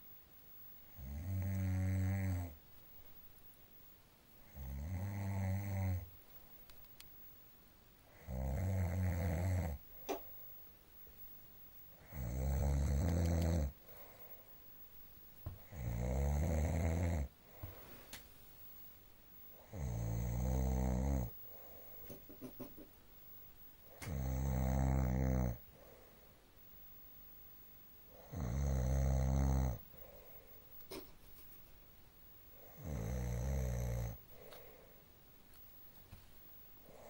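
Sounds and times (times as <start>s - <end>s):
man snoring: 1.0s - 2.6s, 4.5s - 6.1s, 8.2s - 9.8s, 12.0s - 13.8s, 15.6s - 17.3s, 19.7s - 21.3s, 24.0s - 25.6s, 28.2s - 29.8s, 32.7s - 34.2s
quiet breathing: 8.0s - 22.4s, 23.2s - 37.0s.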